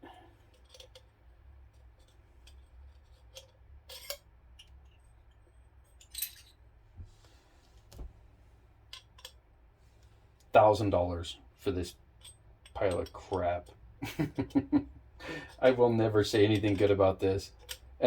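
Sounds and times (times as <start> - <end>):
metal parts clicking and clinking: 0.5 - 1.1, 1.7 - 5.0, 5.8 - 6.6, 8.8 - 9.4, 12.2 - 13.5, 15.5 - 17.9.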